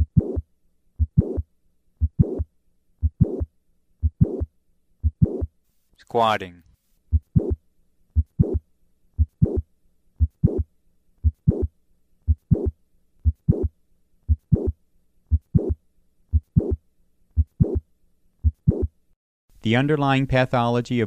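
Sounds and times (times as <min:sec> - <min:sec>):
heartbeat: 0:00.0 - 0:00.4, 0:01.0 - 0:05.5, 0:07.1 - 0:08.6, 0:09.2 - 0:11.7, 0:12.3 - 0:13.7, 0:14.3 - 0:16.8, 0:17.4 - 0:17.8, 0:18.4 - 0:18.9
heart click with harsh murmur: 0:00.0 - 0:05.5, 0:07.1 - 0:07.6, 0:08.2 - 0:08.6, 0:09.2 - 0:11.7, 0:12.3 - 0:13.7, 0:14.3 - 0:16.8, 0:17.4 - 0:17.8, 0:18.4 - 0:18.9.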